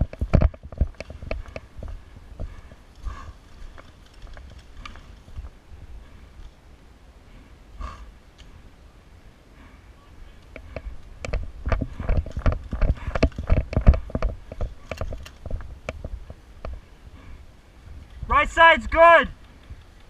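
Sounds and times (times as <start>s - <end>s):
sharp knocks and clicks: 0.0s - 1.7s.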